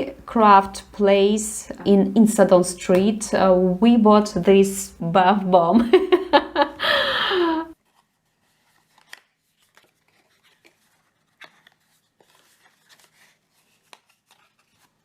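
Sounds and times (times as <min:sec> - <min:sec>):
packaging rustling: 0:07.8 - 0:15.0.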